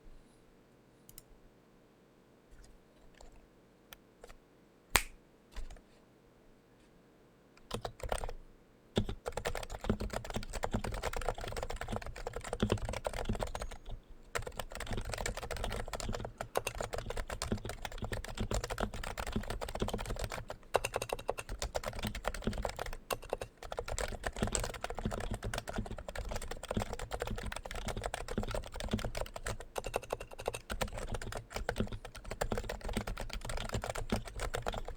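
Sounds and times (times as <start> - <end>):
typing on a keyboard: 7.6 - 8.4, 9.0 - 34.9.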